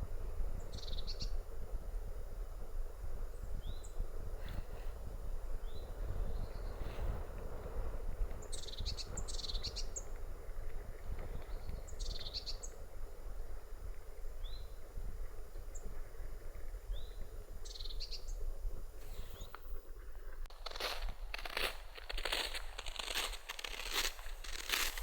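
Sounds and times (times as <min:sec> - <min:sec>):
wind rumbling on microphone: 0:00.0 - 0:22.8
small birds singing: 0:00.6 - 0:01.4, 0:03.4 - 0:04.0, 0:05.5 - 0:07.2, 0:08.4 - 0:10.1, 0:11.3 - 0:12.8, 0:16.8 - 0:18.4, 0:19.0 - 0:20.3.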